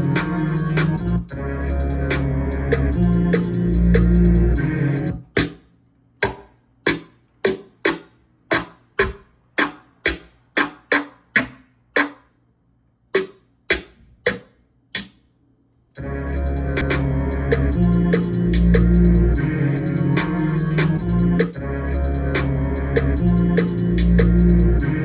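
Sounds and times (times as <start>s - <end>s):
pitched sample melody: 0.0s - 5.3s, 16.0s - 25.0s
hip hop beat with heavy bass: 0.0s - 5.6s, 16.0s - 25.0s.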